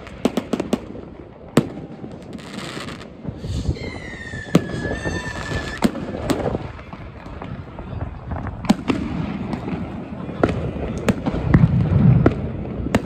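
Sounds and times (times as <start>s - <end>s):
whistling firework: 0.0s - 13.0s
rumble of explosions: 3.0s - 13.0s
firecracker bangs: 4.4s - 13.0s.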